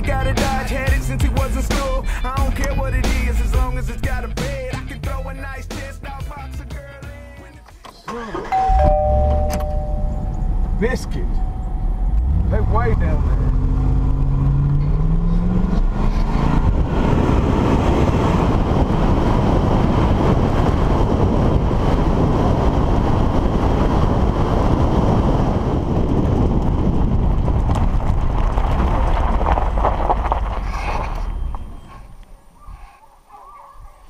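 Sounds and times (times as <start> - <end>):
vehicle engine and road noise: 0.0 - 33.3
wind buffeting microphone: 8.7 - 33.0.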